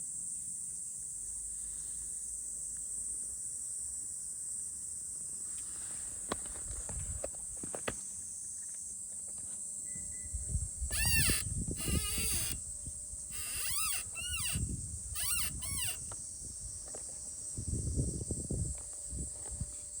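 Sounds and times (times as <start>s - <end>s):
suspension linkage squeaking: 10.9s - 12.6s, 13.3s - 16.2s.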